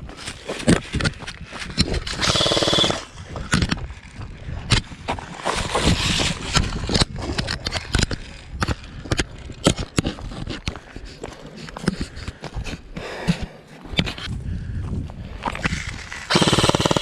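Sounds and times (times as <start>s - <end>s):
airsoft gun full-auto burst: 2.2s - 3.1s, 16.3s - 17.0s.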